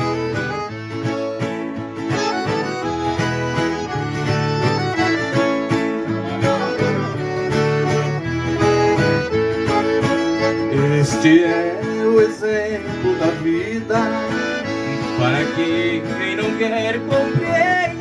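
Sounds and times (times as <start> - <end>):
accordion: 0.0 - 18.0
plucked guitar: 0.0 - 18.0.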